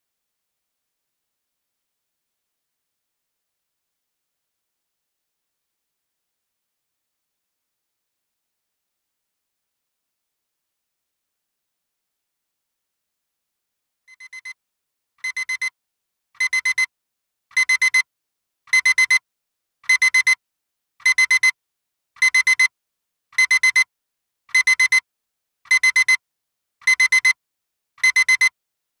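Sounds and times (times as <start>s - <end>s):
timer alarm beeping: 14.1s - 14.6s, 15.2s - 15.8s, 16.4s - 16.9s, 17.5s - 18.1s, 18.7s - 19.2s, 19.9s - 20.4s, 21.0s - 21.6s, 22.2s - 22.7s, 23.4s - 23.9s, 24.5s - 25.0s, 25.7s - 26.2s, 26.8s - 27.4s, 28.0s - 28.6s.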